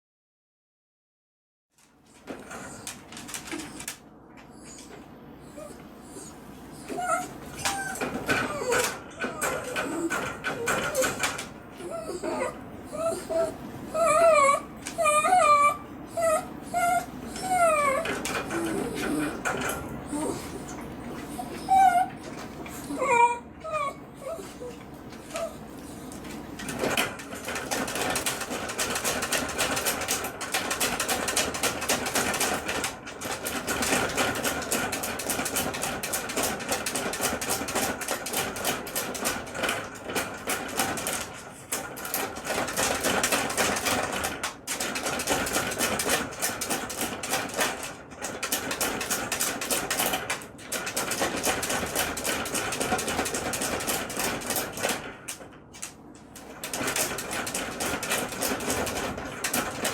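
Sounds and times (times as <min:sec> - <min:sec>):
dog scratching at cage: 0:02.1 - 0:04.0, 0:04.6 - 0:59.9.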